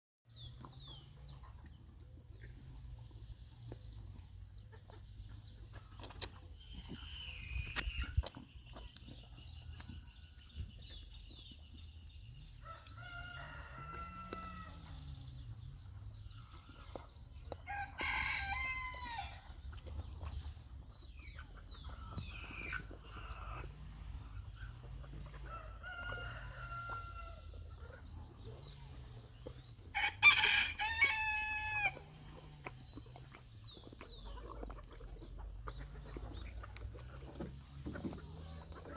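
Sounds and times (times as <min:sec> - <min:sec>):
small birds chirping: 0:00.3 - 0:38.9
chickens clucking: 0:00.5 - 0:10.0, 0:18.7 - 0:29.8, 0:31.1 - 0:38.9
roosters crowing: 0:12.6 - 0:15.2, 0:17.6 - 0:19.5, 0:25.3 - 0:27.7, 0:29.9 - 0:32.2.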